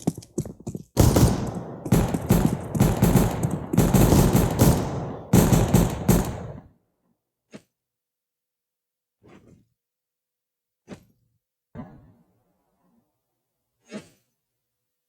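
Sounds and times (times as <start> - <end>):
video game automatic gunfire: 1.0 - 6.7.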